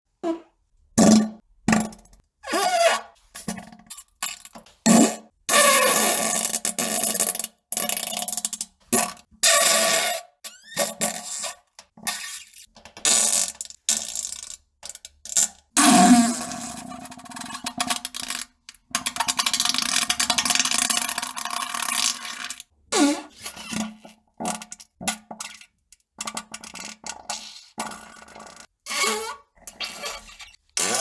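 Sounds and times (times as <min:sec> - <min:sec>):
fart sound effects: 0:00.2 - 0:01.4.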